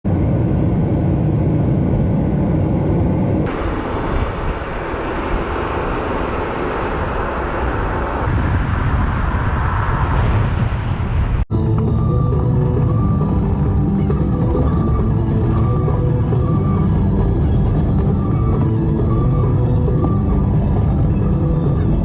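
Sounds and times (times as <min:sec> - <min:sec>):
wind buffeting microphone: 0:00.1 - 0:22.0.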